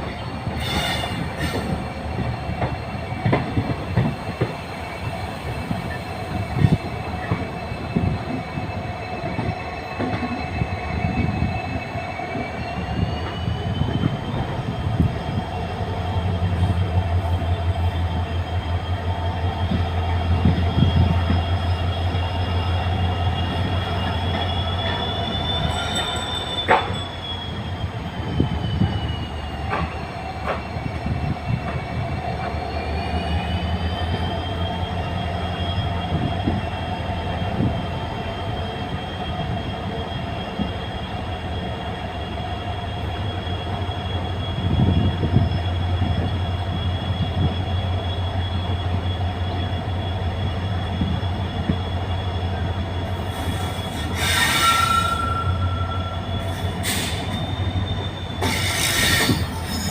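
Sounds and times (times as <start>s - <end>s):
train running on rails: 0.0s - 59.9s
high-pitched wheel squeals: 0.1s - 59.9s.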